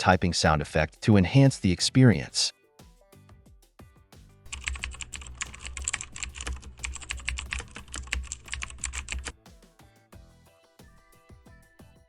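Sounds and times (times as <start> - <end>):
soft background music: 0.0 - 12.0
keyboard key clicks: 4.5 - 9.3.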